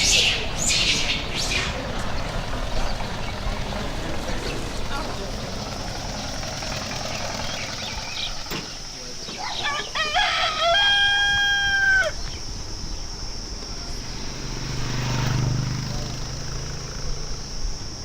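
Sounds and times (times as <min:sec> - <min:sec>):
steady background noise: 0:00.0 - 0:18.0
rooster crowing: 0:09.4 - 0:12.3.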